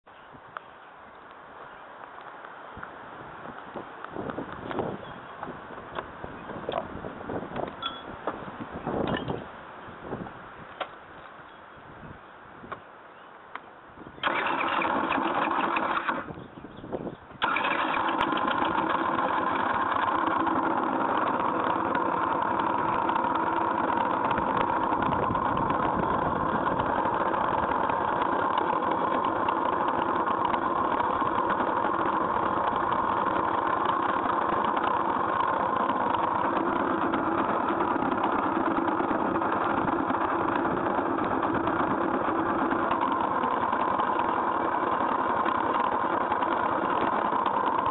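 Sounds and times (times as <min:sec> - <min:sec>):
scooter engine idling: 0:14.2 - 0:16.6, 0:17.4 - 0:47.9.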